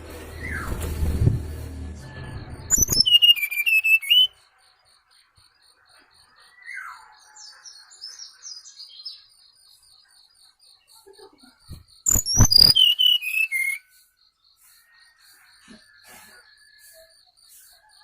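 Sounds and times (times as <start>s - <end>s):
quick whistled bird notes: 0.0s - 1.7s, 2.7s - 4.4s, 11.7s - 13.9s
high chirps: 0.0s - 4.6s, 11.0s - 15.5s
falling whistle: 0.2s - 4.3s, 12.1s - 13.9s.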